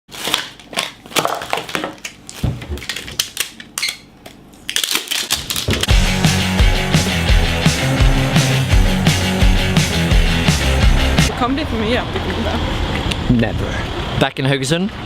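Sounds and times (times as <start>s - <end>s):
sharp crunching and crackling: 4.6s - 6.0s
rock music: 5.9s - 11.3s.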